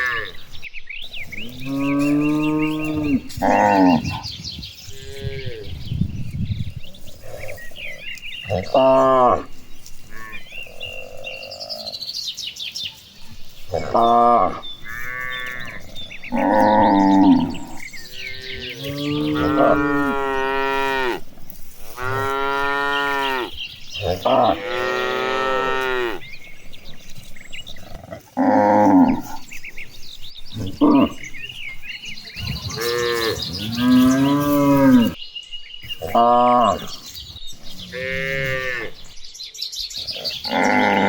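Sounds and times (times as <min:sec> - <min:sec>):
cattle mooing: 0:01.5 - 0:04.2, 0:13.7 - 0:21.2, 0:22.0 - 0:26.3, 0:27.8 - 0:29.4, 0:32.5 - 0:35.2, 0:37.8 - 0:39.0, 0:40.4 - 0:41.0.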